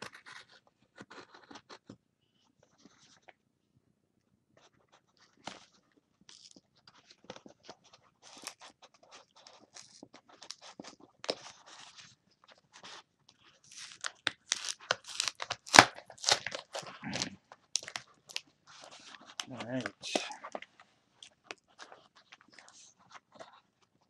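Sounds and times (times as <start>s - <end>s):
cardboard and tape tearing: 0.0s - 1.8s, 13.4s - 20.6s
knife cutting package: 0.0s - 1.8s, 12.8s - 20.6s.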